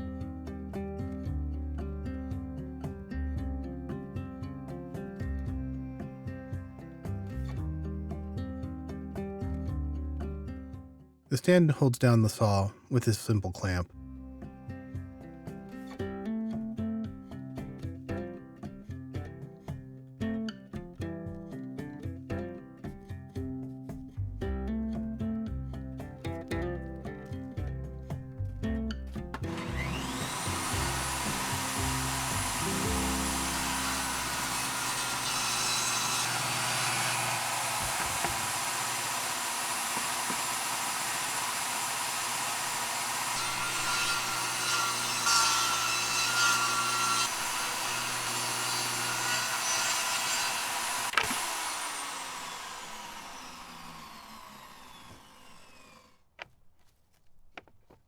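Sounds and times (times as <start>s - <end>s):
saw cutting plywood: 29.3s - 56.3s
table saw motor whine: 29.4s - 56.2s.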